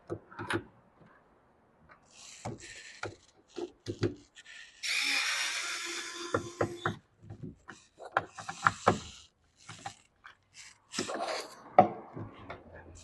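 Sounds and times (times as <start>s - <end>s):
cordless screwdriver whirring: 2.2s - 7.0s.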